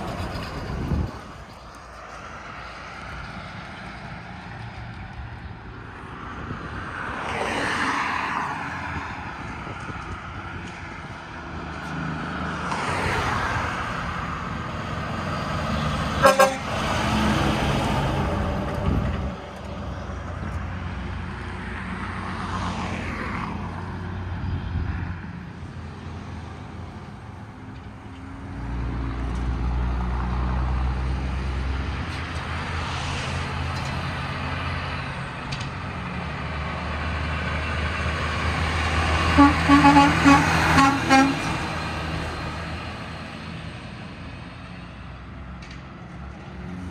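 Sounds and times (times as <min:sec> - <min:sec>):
vehicles passing on road: 0:00.0 - 0:46.9
horn blasts: 0:16.2 - 0:16.9, 0:39.3 - 0:41.7.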